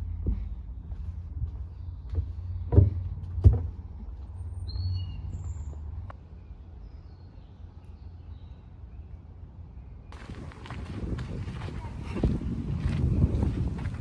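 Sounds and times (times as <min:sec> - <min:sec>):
low outdoor rumble: 0:10.2 - 0:14.0.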